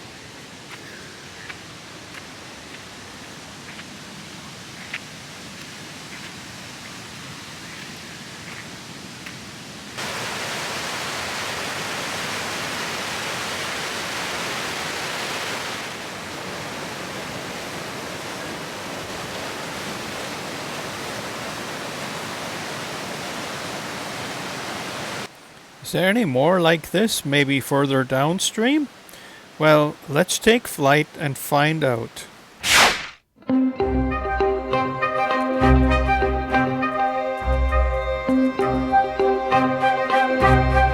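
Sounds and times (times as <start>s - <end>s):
waterfall rushing: 10.0s - 25.3s, 26.6s - 32.8s.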